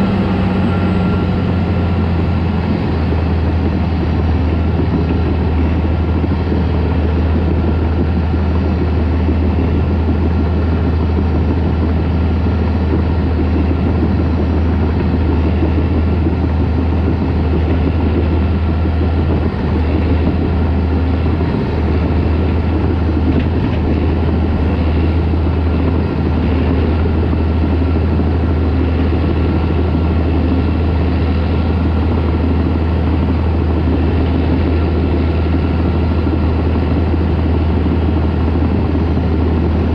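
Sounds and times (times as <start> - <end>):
tractor diesel engine droning: 0.0 - 39.9.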